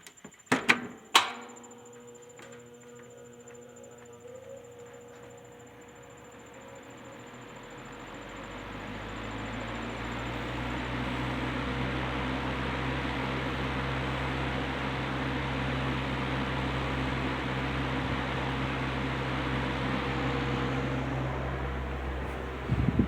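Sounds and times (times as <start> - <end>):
fan air rushing: 0.9 - 23.0
low motor hum: 1.2 - 23.0.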